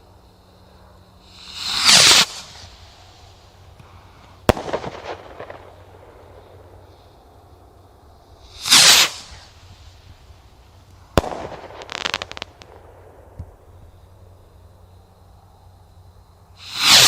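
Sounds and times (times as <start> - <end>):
rocket launching whoosh: 1.3 - 2.9, 4.4 - 5.7, 8.4 - 9.9, 11.1 - 12.8, 16.6 - 17.0
firework bang: 3.8 - 6.4, 8.5 - 9.7, 11.1 - 13.6.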